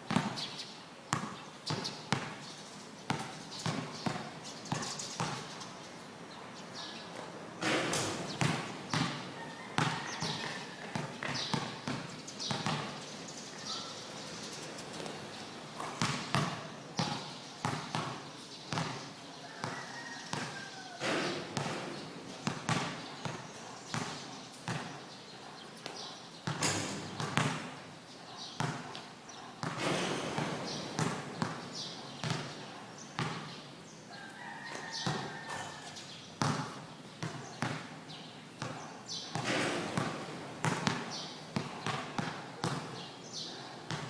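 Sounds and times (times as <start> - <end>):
basketball bouncing on court: 0.1 - 0.4, 1.1 - 2.5, 3.1 - 5.6, 7.2 - 13.0, 15.0 - 25.1, 25.8 - 27.8, 28.6 - 29.0, 29.6 - 33.6, 35.0 - 35.7, 36.4 - 37.9, 38.6 - 43.1.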